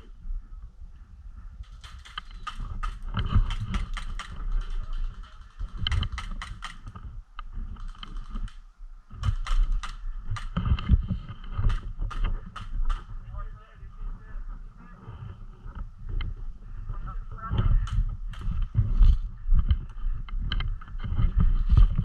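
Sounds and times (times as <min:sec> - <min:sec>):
handling rumble: 0:00.0 - 0:22.0
airsoft gun firing bursts: 0:01.7 - 0:06.9, 0:09.2 - 0:10.6.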